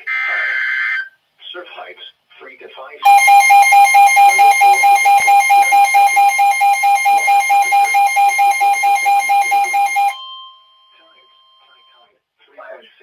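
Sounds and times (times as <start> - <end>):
rapid electronic alarm beeps: 3.1 - 10.2.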